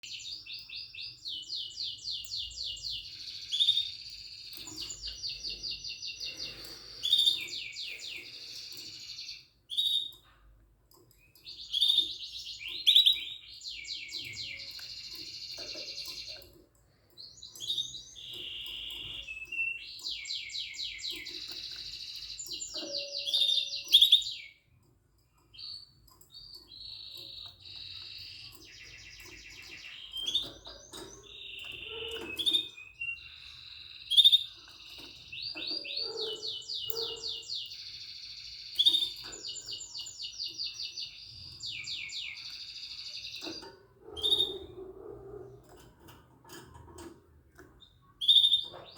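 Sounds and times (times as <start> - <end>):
canary singing trills: 0.0 - 48.9.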